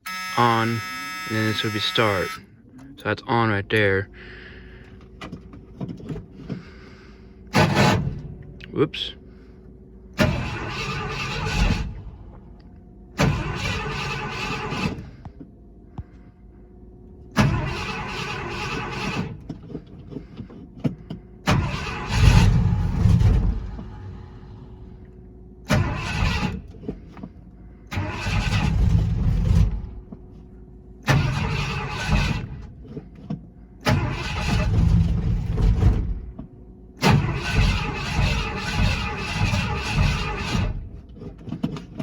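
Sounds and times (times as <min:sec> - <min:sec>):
starter cranking engine: 0:00.1 - 0:02.4, 0:10.2 - 0:12.3, 0:13.2 - 0:15.2, 0:17.3 - 0:24.8, 0:25.6 - 0:30.0, 0:31.0 - 0:36.3, 0:37.0 - 0:42.0.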